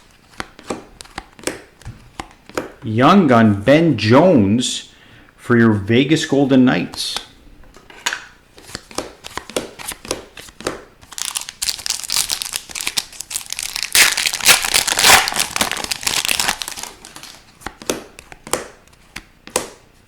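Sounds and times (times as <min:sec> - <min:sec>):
foil wrapper tearing and crinkling: 0:11.1 - 0:17.4.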